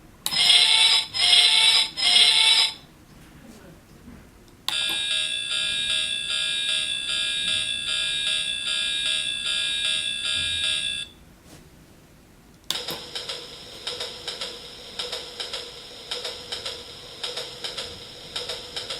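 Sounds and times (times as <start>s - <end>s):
buzzing bell-like ringing tone: 0.3s - 2.9s, 4.7s - 11.2s.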